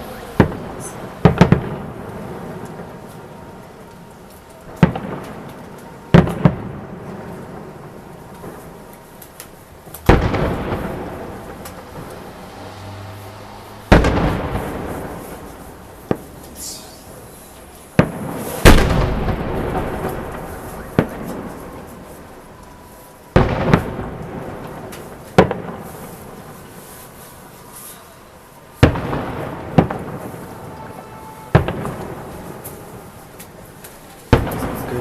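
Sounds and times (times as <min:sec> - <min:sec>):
sharp firework cracks: 0:00.0 - 0:12.9, 0:13.6 - 0:35.0
firework shell bursts booming: 0:18.0 - 0:21.9, 0:34.3 - 0:35.0.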